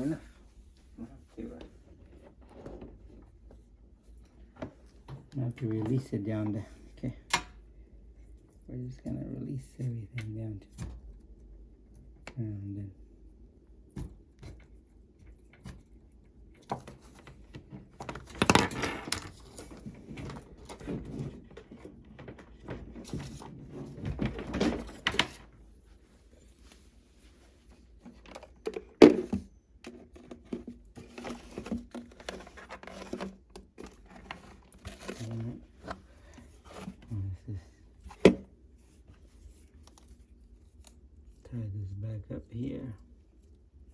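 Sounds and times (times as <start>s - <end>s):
cables rustling and clicking: 13.7s - 41.6s.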